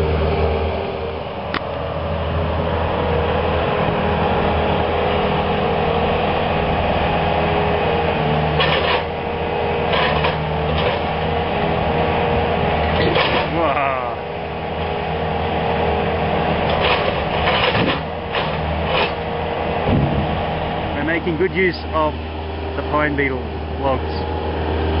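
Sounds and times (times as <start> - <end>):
loader engine running: 0.0 - 25.0
rattling bursts: 8.4 - 11.4, 12.8 - 13.8, 16.5 - 21.8.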